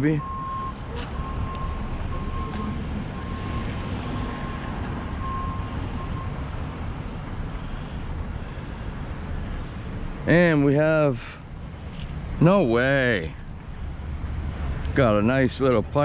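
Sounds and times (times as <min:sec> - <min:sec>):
low rumble of traffic: 0:00.0 - 0:16.0
reversing beeper beeps: 0:00.2 - 0:06.4.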